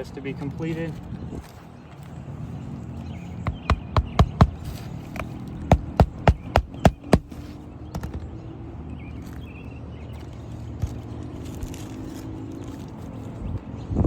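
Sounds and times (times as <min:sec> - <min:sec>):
hammer striking nails: 0:03.4 - 0:07.4.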